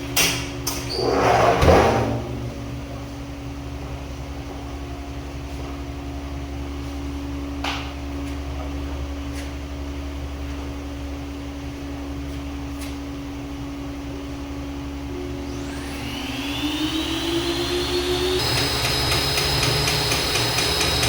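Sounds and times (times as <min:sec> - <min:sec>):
electric motor humming: 0:15.2 - 0:21.0.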